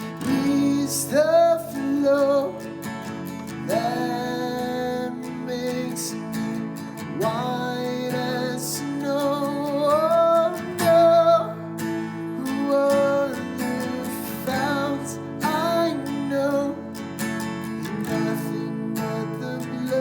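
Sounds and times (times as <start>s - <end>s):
person singing: 0.0s - 2.8s, 3.5s - 17.0s, 18.0s - 20.0s
acoustic guitar strumming: 0.0s - 20.0s.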